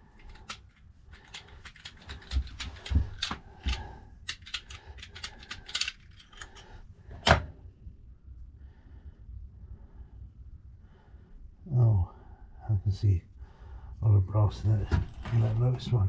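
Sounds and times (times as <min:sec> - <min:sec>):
key clicking in safe lock: 0:00.2 - 0:06.6.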